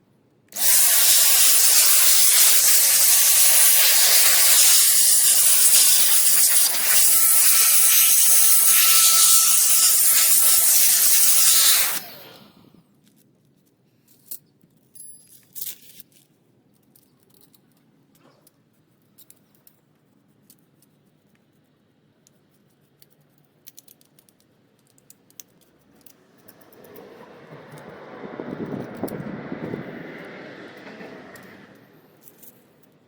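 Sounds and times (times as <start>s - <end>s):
metallic clicks and rattles: 13.0s - 27.9s
steady rushing noise: 26.4s - 32.2s.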